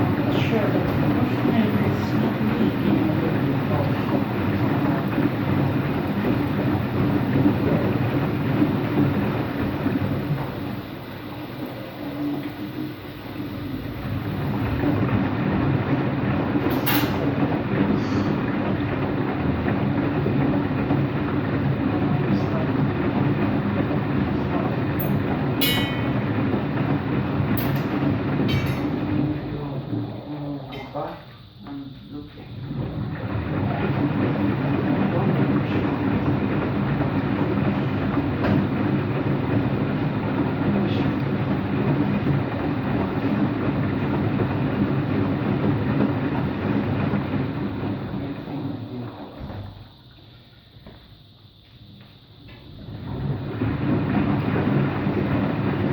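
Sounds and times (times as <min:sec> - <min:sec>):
washing machine spinning rumble: 0:00.0 - 0:55.9.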